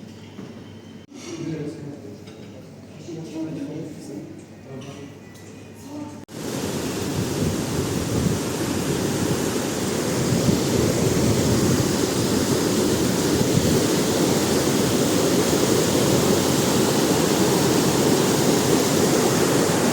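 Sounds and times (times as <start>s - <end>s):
river rushing over rocks: 6.3s - 19.9s.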